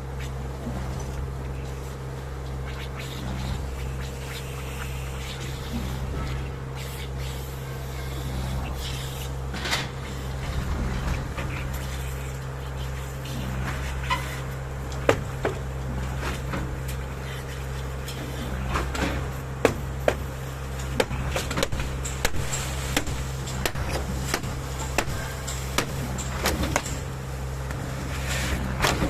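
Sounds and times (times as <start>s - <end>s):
pump engine droning: 0.0s - 29.0s
sharp knocks and clanks: 14.9s - 17.0s, 18.1s - 27.1s.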